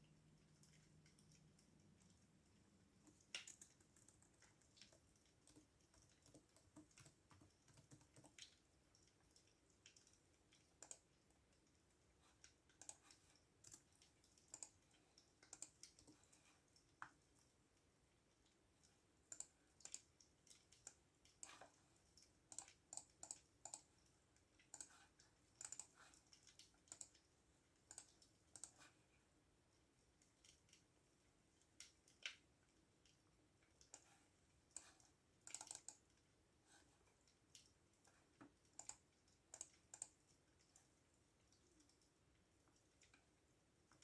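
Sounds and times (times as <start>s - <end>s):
typing on computer keyboard: 3.0s - 11.2s, 12.7s - 16.4s, 19.3s - 21.8s, 22.5s - 24.0s, 24.6s - 27.2s, 27.8s - 28.9s, 34.7s - 36.2s, 38.7s - 40.2s.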